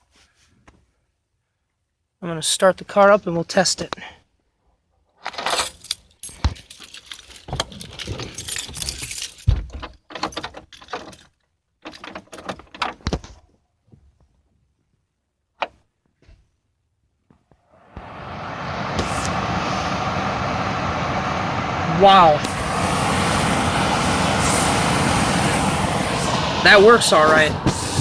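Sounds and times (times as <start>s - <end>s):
keys jangling: 5.3s - 12.8s
knocks and rustles: 6.3s - 14.5s.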